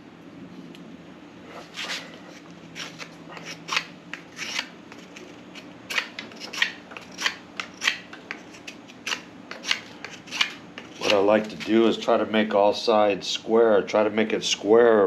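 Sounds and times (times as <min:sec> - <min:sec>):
blade shaving wood: 0:01.6 - 0:11.8.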